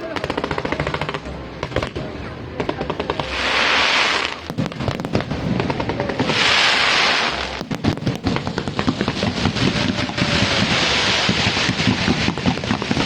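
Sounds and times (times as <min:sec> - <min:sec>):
fireworks crackling pops: 0:00.0 - 0:13.0
fireworks hissing rushes: 0:02.8 - 0:13.0.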